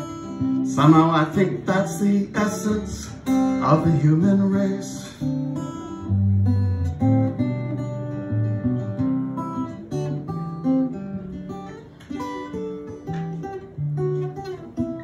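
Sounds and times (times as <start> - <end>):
acoustic guitar playing: 0.0 - 15.0.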